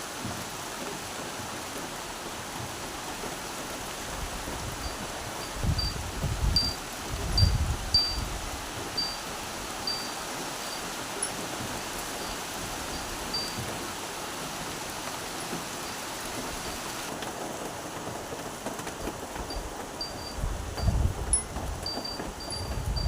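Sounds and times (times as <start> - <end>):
rain falling: 0.0 - 23.0.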